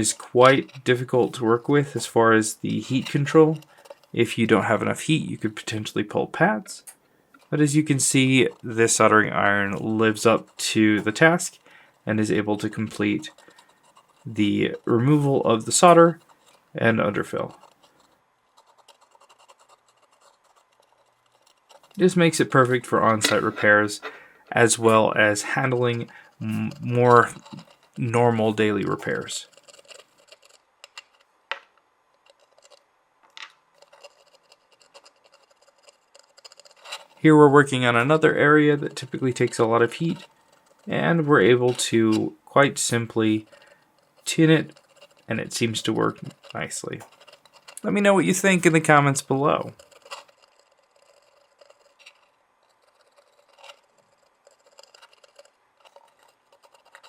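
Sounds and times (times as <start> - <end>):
soldering tools tapping and scraping: 6.8 - 9.0, 12.3 - 50.4
short scratch: 7.4 - 31.3.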